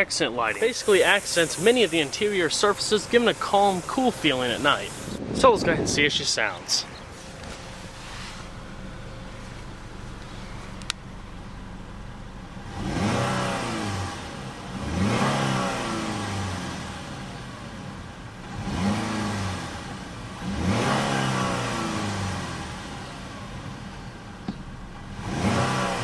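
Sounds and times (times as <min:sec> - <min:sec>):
car engine idling and revving: 0:00.0 - 0:05.2, 0:06.8 - 0:26.0.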